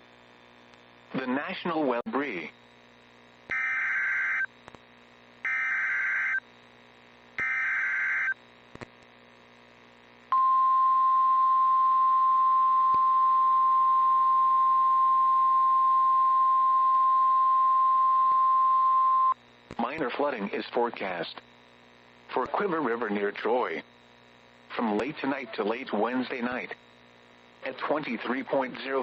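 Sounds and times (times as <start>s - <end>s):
steady alarm tone: 3.5s - 4.5s, 5.4s - 6.4s, 7.4s - 8.4s.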